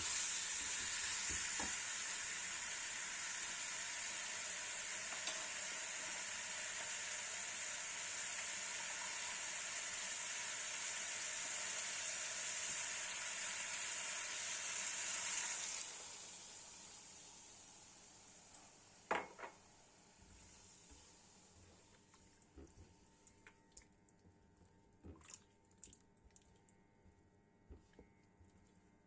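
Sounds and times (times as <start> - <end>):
chicken wings sizzling in oil: 0.0 - 19.4.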